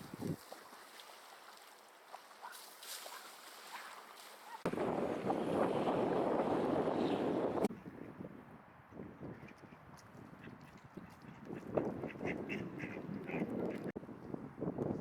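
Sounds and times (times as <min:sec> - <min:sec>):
wind buffeting microphone: 0:00.0 - 0:00.5, 0:04.6 - 0:15.0.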